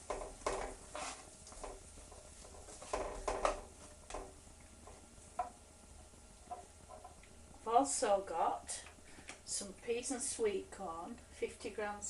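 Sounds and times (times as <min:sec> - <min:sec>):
utensil scraping a frying pan: 0:00.0 - 0:04.3.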